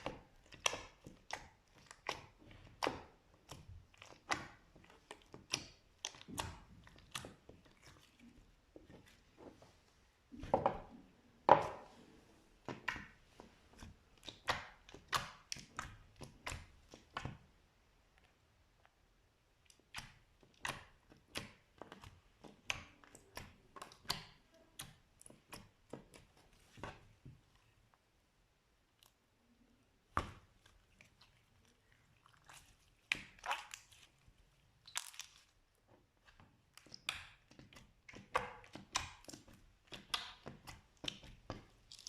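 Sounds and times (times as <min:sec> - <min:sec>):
slime crackling and popping: 0:30.1 - 0:42.0.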